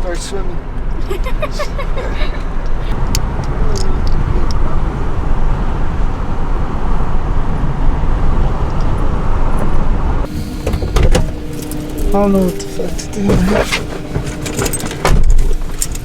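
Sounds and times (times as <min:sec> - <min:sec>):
road and wind noise: 0:00.0 - 0:16.0.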